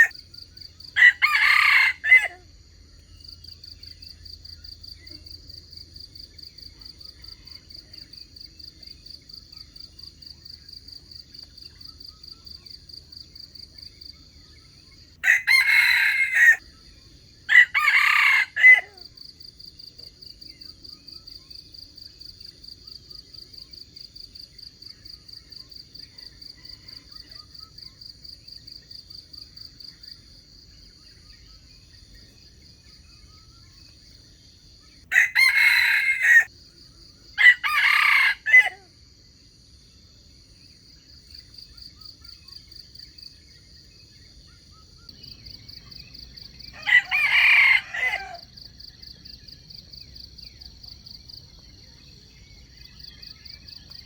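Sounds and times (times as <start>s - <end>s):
rooster crowing: 1.0s - 2.5s, 15.2s - 16.6s, 17.5s - 19.0s, 35.1s - 36.5s, 37.4s - 38.9s, 46.7s - 48.6s.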